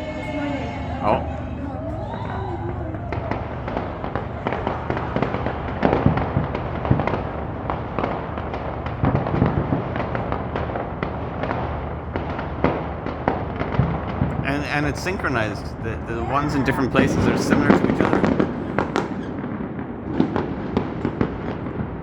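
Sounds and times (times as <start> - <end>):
low rumble: 0.0 - 7.8
distant fireworks bangs: 0.6 - 22.0.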